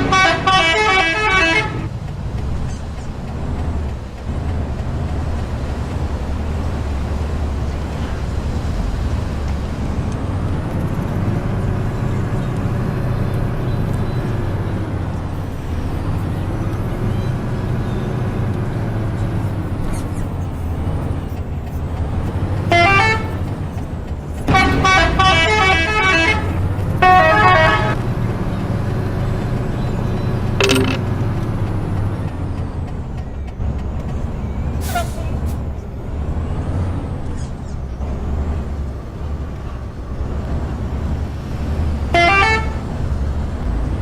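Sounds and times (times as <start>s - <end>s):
bus horn melody: 0.0s - 1.9s, 22.7s - 23.4s, 24.5s - 28.0s, 42.1s - 42.8s
bus engine idling: 0.0s - 44.0s.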